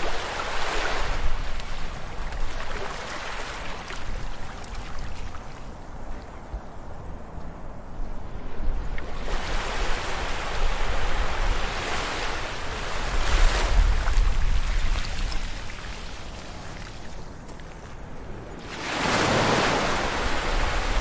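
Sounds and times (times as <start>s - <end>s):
ocean wave breaking: 18.6s - 21.0s.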